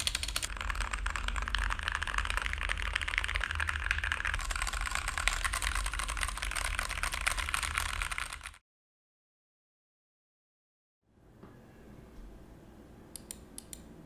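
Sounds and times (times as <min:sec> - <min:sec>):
mechanical keyboard typing: 0:00.0 - 0:08.6.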